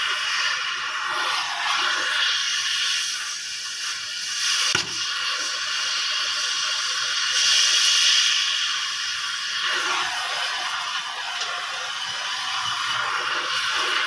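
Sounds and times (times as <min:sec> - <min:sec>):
arc welding hiss: 0:00.0 - 0:14.0
sharp click: 0:04.8 - 0:05.0.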